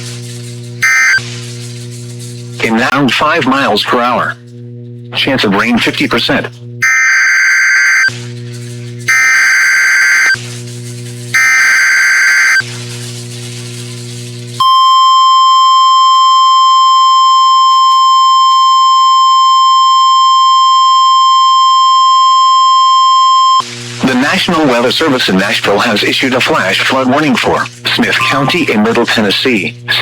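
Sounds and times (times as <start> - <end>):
buzzing data bursts: 0.0 - 4.4, 5.2 - 30.0
low hum: 0.0 - 26.6
steady warning alert tone: 0.8 - 1.3, 5.2 - 8.2, 9.1 - 10.4, 11.4 - 12.6, 27.9 - 29.4.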